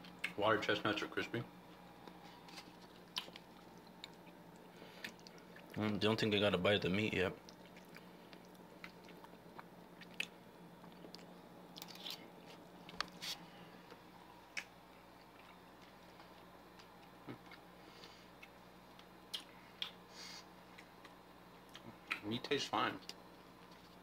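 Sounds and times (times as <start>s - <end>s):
steady low hum: 0.0s - 24.0s
person chewing food: 2.0s - 5.8s, 7.4s - 22.2s.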